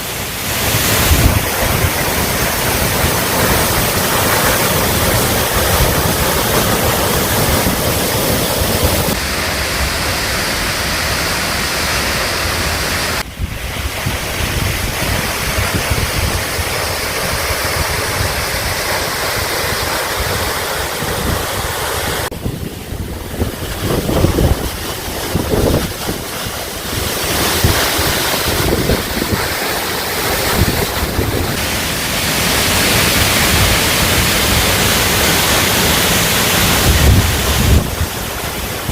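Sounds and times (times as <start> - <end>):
waterfall rushing: 0.0 - 38.9
wind buffeting microphone: 0.8 - 9.2, 13.2 - 31.6, 36.6 - 38.9.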